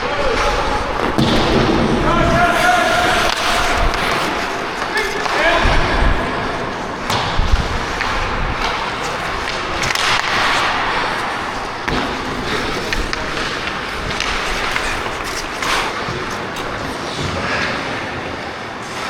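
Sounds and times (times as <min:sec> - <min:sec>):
skate blades scraping ice: 0:00.0 - 0:19.0
sticks and puck clacking: 0:00.0 - 0:19.0.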